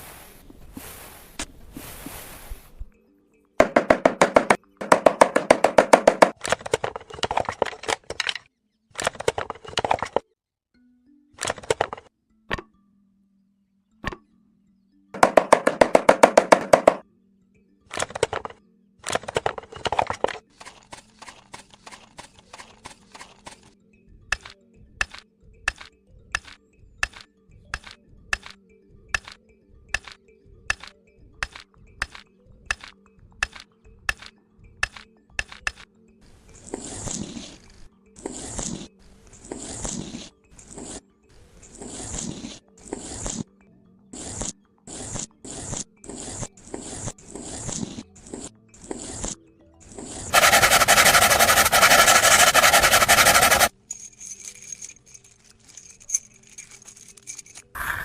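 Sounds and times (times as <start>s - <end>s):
music with percussive beat: 3.6s - 6.4s
rapid clicking: 50.3s - 53.7s.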